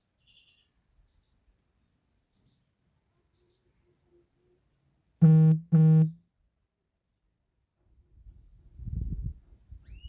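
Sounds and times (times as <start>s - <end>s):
low electronic buzzing tone: 5.2s - 6.2s.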